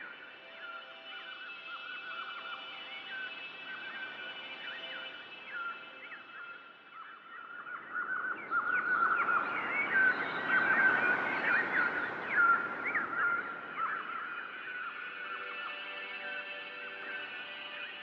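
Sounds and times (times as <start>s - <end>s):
small birds chirping: 1.5s - 15.9s.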